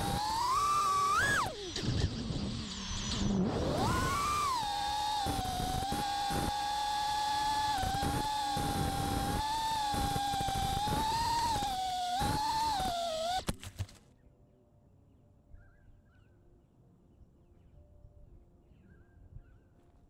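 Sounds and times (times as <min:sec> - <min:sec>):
drone motors whining: 0:00.0 - 0:13.5
faint bird chirps: 0:15.4 - 0:16.6, 0:18.6 - 0:20.0.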